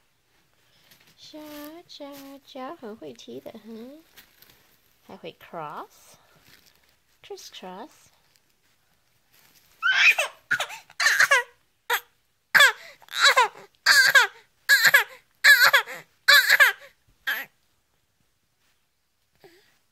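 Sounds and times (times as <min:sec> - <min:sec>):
baby fake-coughing: 0:09.8 - 0:17.5.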